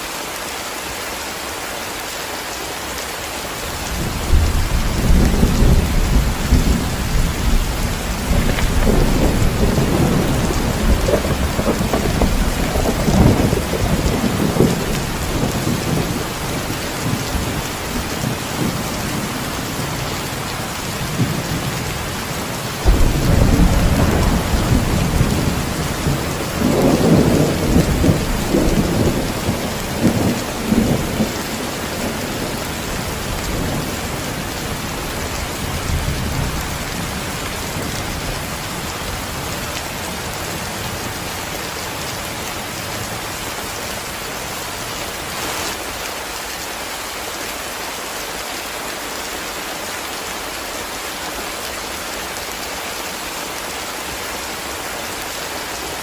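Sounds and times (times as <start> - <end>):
heavy rain: 0.0 - 56.0
thunder rumbling: 3.9 - 39.7.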